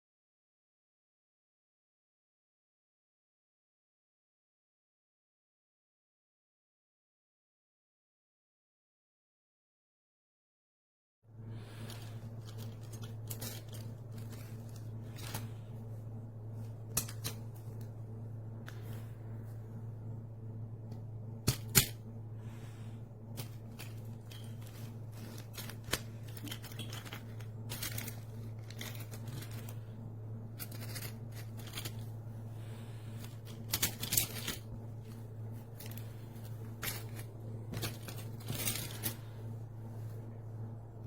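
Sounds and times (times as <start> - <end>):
low hum: 11.3 - 41.0
handling clicks and rustles: 11.5 - 19.7, 20.8 - 22.2, 23.2 - 40.4.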